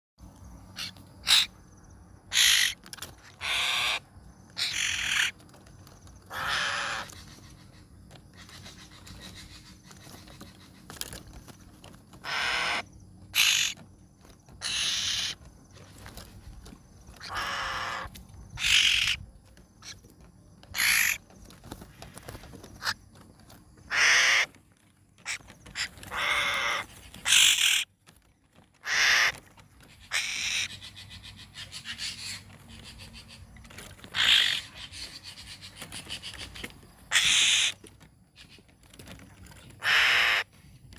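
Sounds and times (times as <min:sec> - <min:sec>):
bird harsh scratchy calls: 0:00.7 - 0:01.6, 0:02.3 - 0:23.2, 0:23.8 - 0:40.6.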